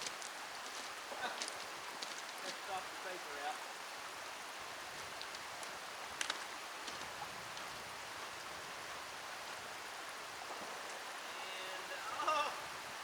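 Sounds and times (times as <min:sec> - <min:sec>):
outdoor background hiss: 0:00.0 - 0:13.0
faint ticks: 0:05.2 - 0:07.7.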